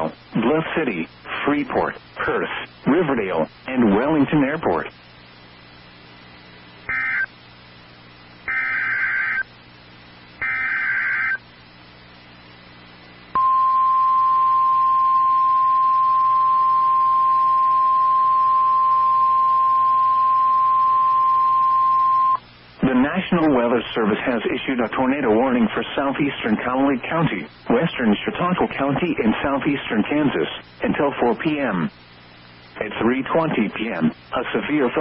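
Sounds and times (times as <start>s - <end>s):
steady warning alarm tone: 6.9s - 7.3s, 8.5s - 9.5s, 10.4s - 11.4s
digital data header bursts: 10.4s - 11.4s.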